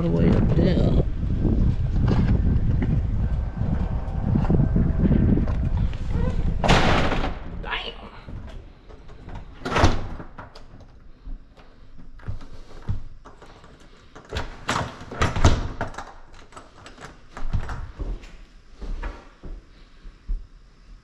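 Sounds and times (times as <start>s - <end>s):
knocks and bangs: 2.0s - 8.5s.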